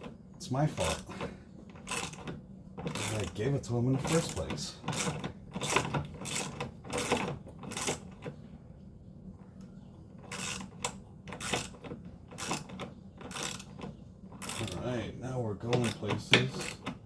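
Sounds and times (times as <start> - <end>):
ratchet wrench clicking: 12.4 - 13.7.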